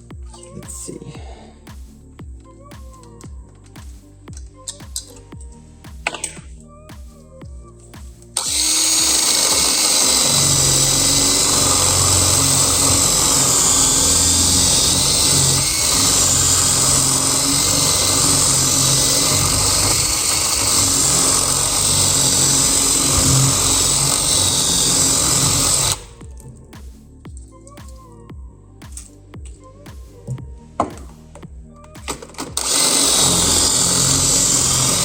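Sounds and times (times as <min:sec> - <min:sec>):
electric drill drilling metal: 0:08.4 - 0:26.2, 0:32.3 - 0:35.0.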